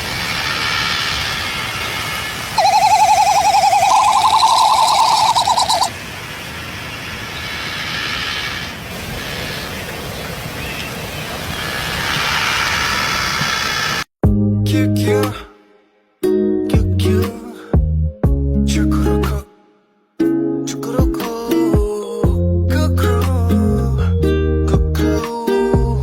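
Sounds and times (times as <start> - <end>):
bird trilling call: 2.6 - 5.9
faint high bird calls: 2.6 - 6.0.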